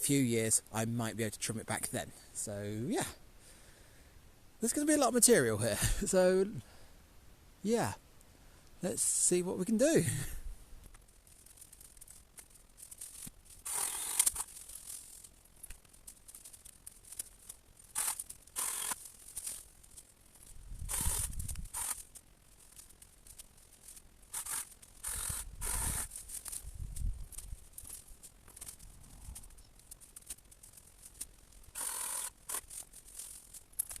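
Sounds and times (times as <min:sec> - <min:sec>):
branches being cut and snapping: 0:10.9 - 0:34.0.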